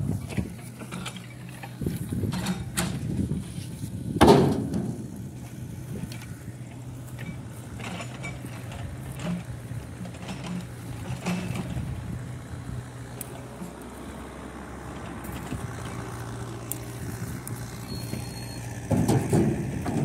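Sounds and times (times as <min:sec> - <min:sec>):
motor running: 0:04.9 - 0:20.0
loud ringing clank: 0:17.8 - 0:20.0.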